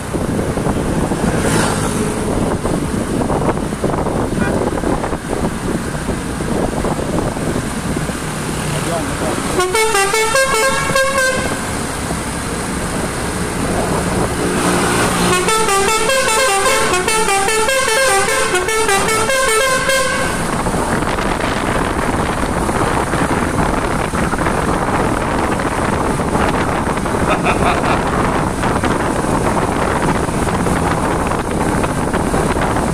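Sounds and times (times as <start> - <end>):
outdoor noise: 0.0 - 32.9
musical car horn tune: 9.6 - 11.8, 15.0 - 20.6.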